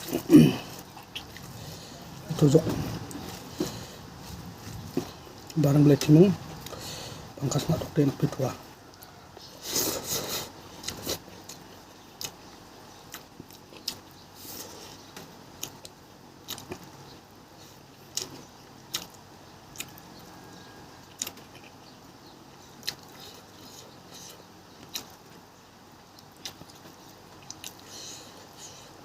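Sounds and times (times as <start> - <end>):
chewing and eating clicks: 10.8 - 14.2, 15.2 - 17.2, 18.0 - 20.1, 21.0 - 22.0, 22.6 - 25.4, 26.0 - 28.1.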